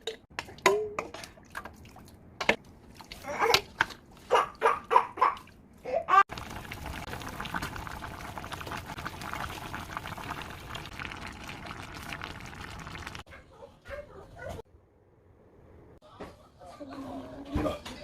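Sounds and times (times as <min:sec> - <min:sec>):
water running and pouring: 0:06.3 - 0:13.3.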